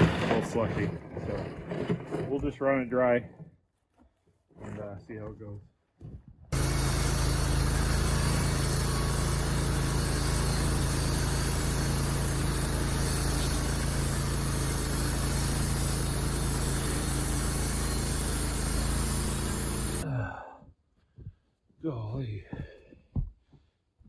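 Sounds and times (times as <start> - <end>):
band sawmill cutting log: 0.0 - 3.2, 6.5 - 20.0.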